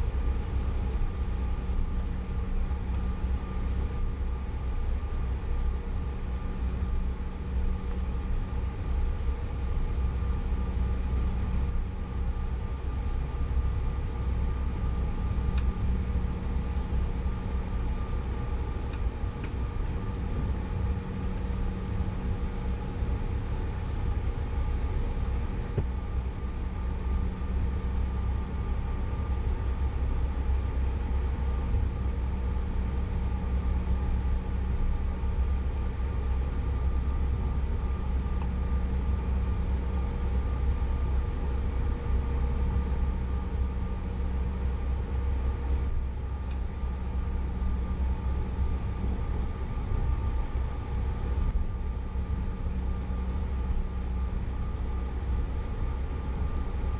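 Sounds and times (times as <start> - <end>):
jet cabin engine rumble: 0.0 - 56.9.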